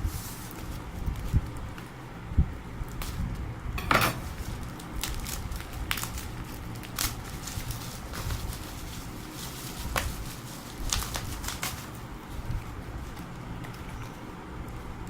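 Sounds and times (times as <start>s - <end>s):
packaging rustle: 4.2s - 13.8s.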